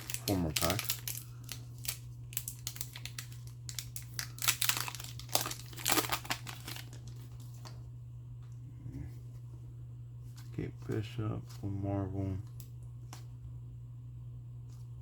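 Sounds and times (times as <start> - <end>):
foil wrapper crinkling: 0.0 - 7.8
low electrical hum: 0.0 - 15.0.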